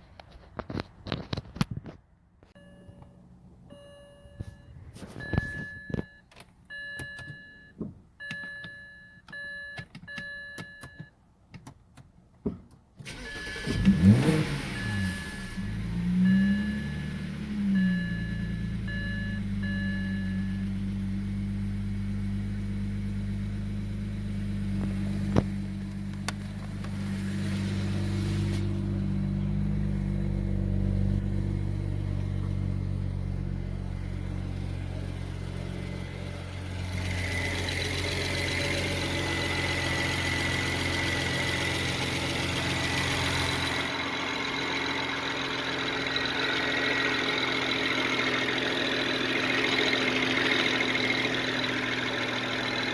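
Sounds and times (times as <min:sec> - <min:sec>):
car engine idling: 0:13.0 - 0:52.9.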